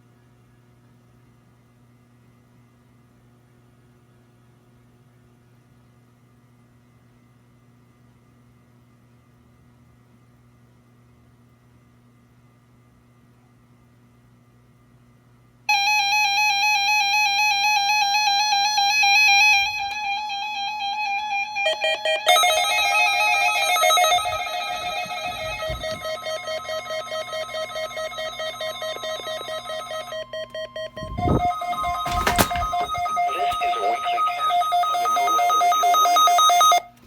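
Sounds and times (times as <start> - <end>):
warbling electronic alarm: 15.7 - 36.9
lower-pitched alarm: 21.4 - 36.9
rapid alarm beeping: 21.7 - 36.9
steady warning tone: 21.8 - 36.9.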